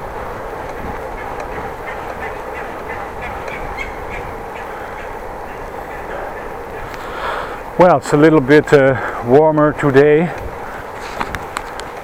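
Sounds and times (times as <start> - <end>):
bicycle ticking: 0.0 - 12.0
wind and riding noise: 0.0 - 12.0.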